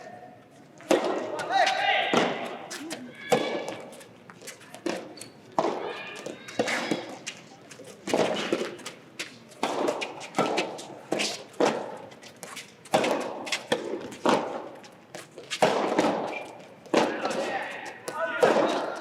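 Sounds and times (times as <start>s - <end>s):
tennis ball hit by rackets: 0.9s - 4.0s, 4.8s - 7.3s, 8.1s - 17.5s, 18.1s - 19.0s
ball bouncing on court: 15.6s - 19.0s.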